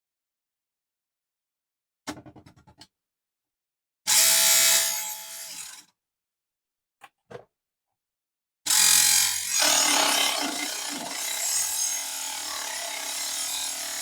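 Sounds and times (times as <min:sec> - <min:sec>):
saw cutting metal with whine: 0:08.7 - 0:14.0.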